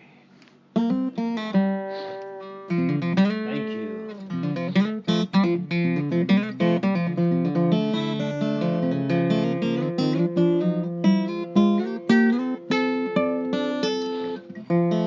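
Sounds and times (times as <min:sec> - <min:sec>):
plucked guitar music: 0:00.7 - 0:15.0.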